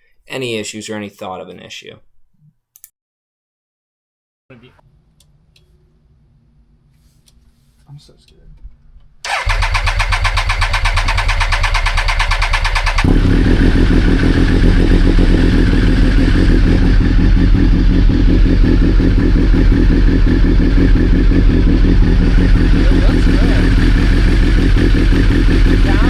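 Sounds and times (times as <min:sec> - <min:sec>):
starter motor cranking: 0:09.2 - 0:13.2
motorcycle engine running: 0:09.3 - 0:26.0.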